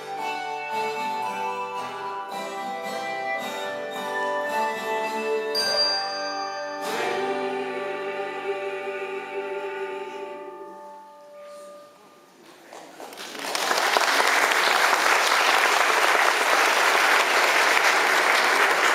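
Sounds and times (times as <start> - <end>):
choir holding a chord: 6.7 - 11.5
audience applause: 12.8 - 18.9.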